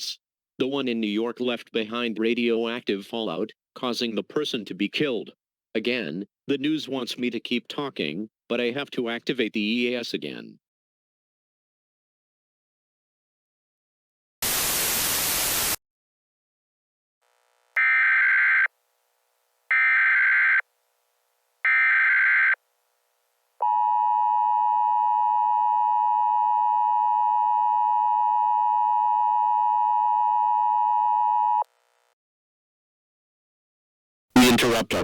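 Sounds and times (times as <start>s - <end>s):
burst of static: 14.4s - 15.8s.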